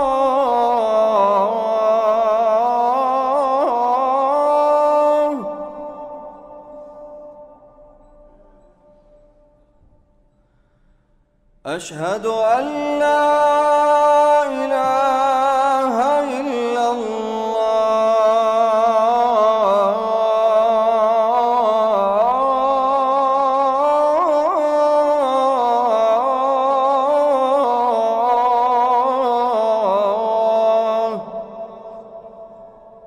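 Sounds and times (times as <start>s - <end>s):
man singing call to prayer: 0.0s - 8.9s, 11.7s - 33.0s.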